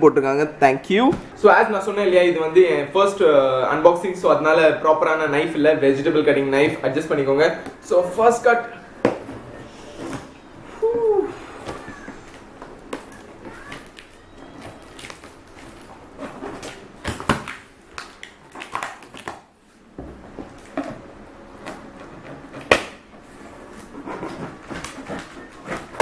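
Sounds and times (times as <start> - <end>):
cardboard flaps rustling: 21.6 - 26.0.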